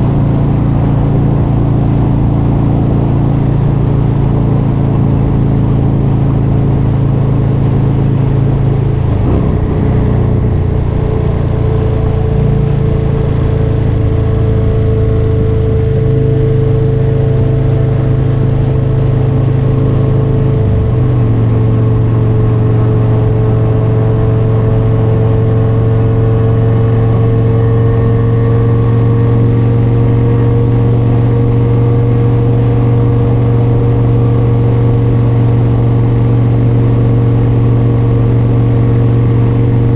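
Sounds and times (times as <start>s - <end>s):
motorcycle engine cruising: 0.0s - 39.9s
steady rushing noise: 0.0s - 39.9s.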